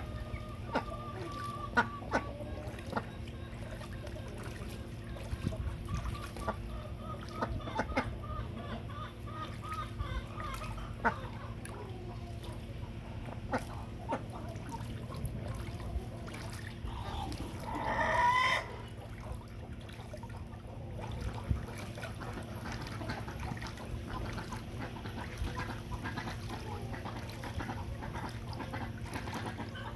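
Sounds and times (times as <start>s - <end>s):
fowl calling: 0.0s - 3.9s, 16.8s - 18.9s.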